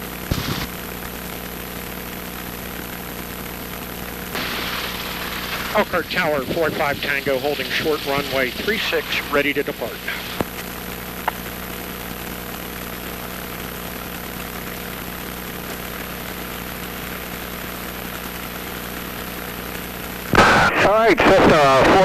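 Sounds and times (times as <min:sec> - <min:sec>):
aircraft engine idling: 0:04.4 - 0:11.6.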